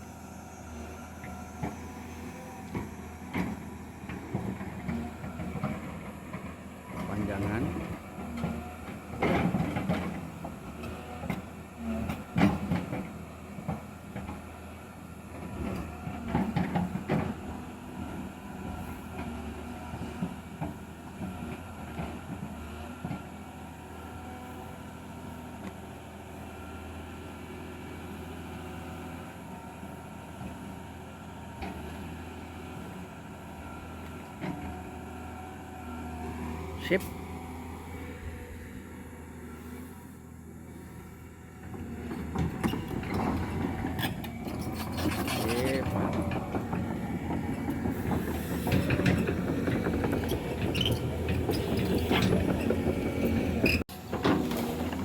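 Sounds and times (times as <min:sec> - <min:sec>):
diesel engine running: 0:00.0 - 0:55.0
heavy knocks and rattling clanks: 0:41.8 - 0:55.0.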